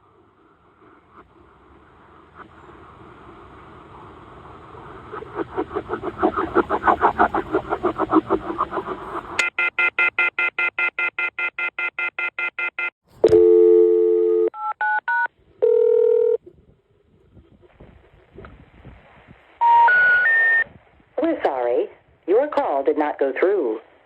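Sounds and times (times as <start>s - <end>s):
rapid pulsing phone tone: 9.0s - 16.4s, 19.6s - 20.7s
dial tone: 9.4s - 16.4s, 19.6s - 20.6s
short dialing tones: 9.4s - 16.4s, 19.6s - 20.7s.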